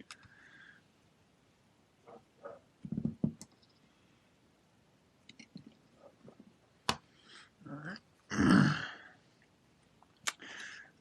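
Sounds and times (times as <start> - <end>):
knocks: 2.8 - 3.4.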